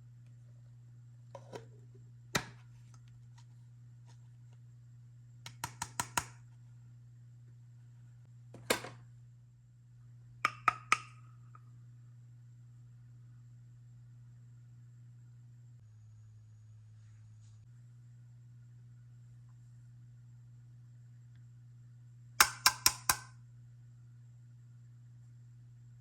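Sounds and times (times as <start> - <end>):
low hum: 11.1 - 22.4.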